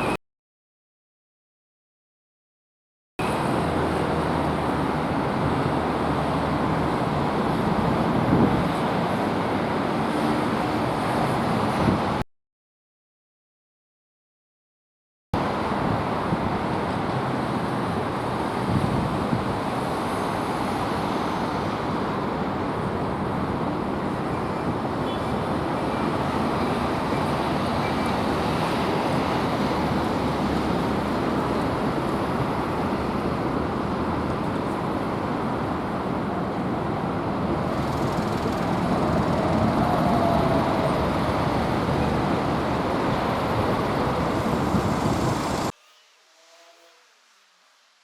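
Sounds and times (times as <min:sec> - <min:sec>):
city road traffic: 0:03.2 - 0:12.2, 0:15.4 - 0:45.8
low engine drone: 0:20.2 - 0:45.7.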